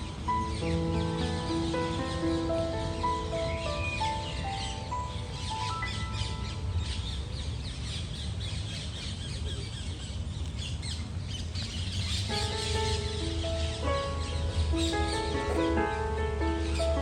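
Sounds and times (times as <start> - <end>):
background music: 0.0 - 6.9, 12.3 - 17.0
low background rumble: 0.0 - 17.0.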